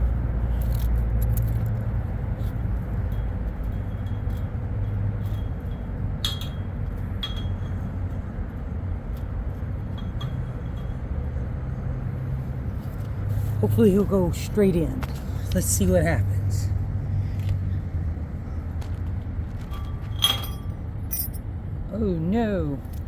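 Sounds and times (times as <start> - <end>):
low background rumble: 0.0 - 23.0
metal wire cage trap clinking: 2.4 - 7.9, 19.7 - 21.4.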